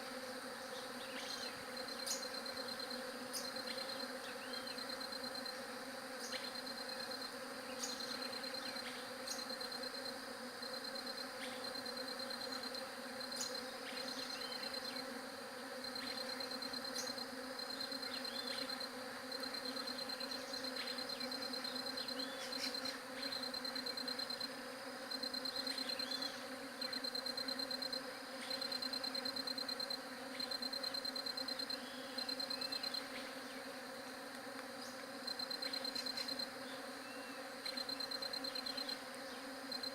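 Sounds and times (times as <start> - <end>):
bees buzzing: 0.0 - 39.9
high pulsed insect trill: 25.1 - 33.2, 34.8 - 36.6, 37.6 - 39.0, 39.6 - 39.9.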